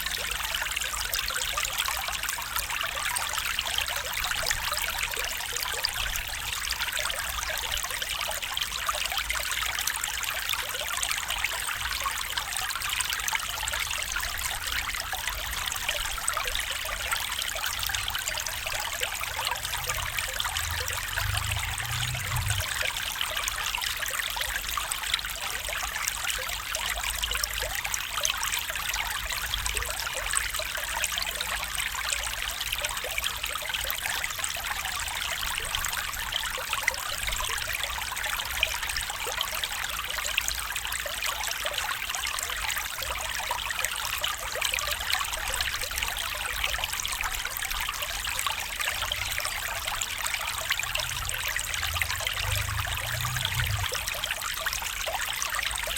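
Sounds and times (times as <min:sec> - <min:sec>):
stream trickling: 0:00.0 - 0:55.9.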